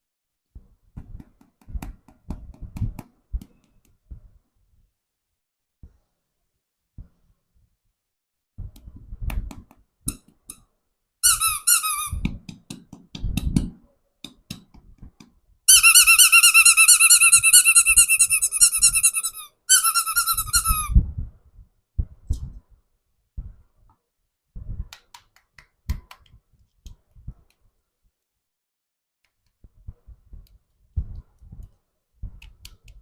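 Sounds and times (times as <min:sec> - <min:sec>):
squeaky toy squealing: 0:11.2 - 0:12.2, 0:15.7 - 0:21.0.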